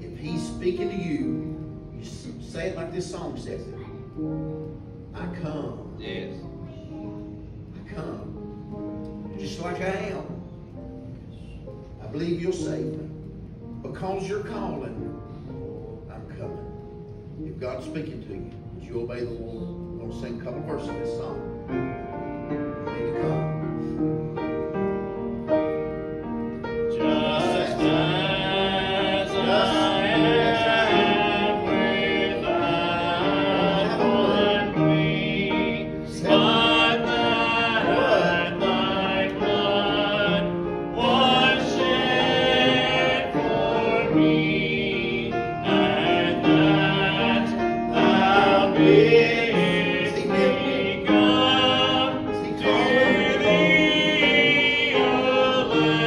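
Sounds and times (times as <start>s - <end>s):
piano accompaniment: 0.0s - 56.0s
man singing a hymn: 26.9s - 56.0s.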